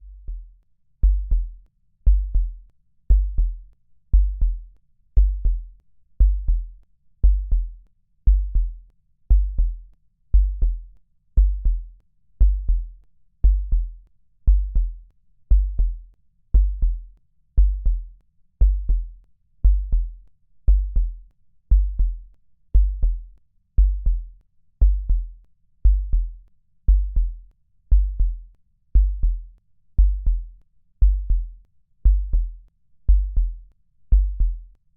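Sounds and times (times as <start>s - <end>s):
electronic bass drum beat: 1.0s - 1.5s, 2.1s - 3.6s, 4.2s - 4.6s, 5.2s - 5.6s, 6.2s - 6.6s, 7.2s - 7.7s, 8.3s - 8.7s, 9.3s - 9.8s, 10.4s - 10.8s, 11.4s - 11.8s, 12.4s - 13.9s, 14.5s - 16.0s, 16.6s - 17.0s, 17.6s - 20.1s, 20.7s - 22.2s, 22.8s - 23.2s, 23.8s - 26.3s, 26.9s - 28.4s, 29.0s - 34.6s.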